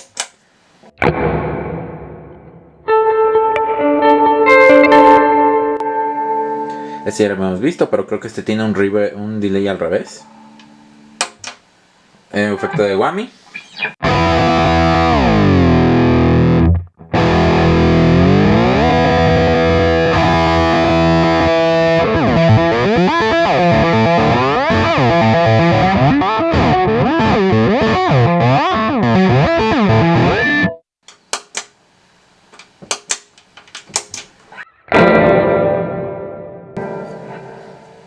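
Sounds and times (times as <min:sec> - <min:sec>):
distorted electric guitar pitch bends: 0:00.9 - 0:07.4, 0:09.8 - 0:11.2, 0:13.7 - 0:30.8, 0:34.6 - 0:38.0
guitar chord ringing: 0:01.0 - 0:07.4, 0:09.9 - 0:11.2, 0:14.0 - 0:30.8, 0:34.9 - 0:38.0.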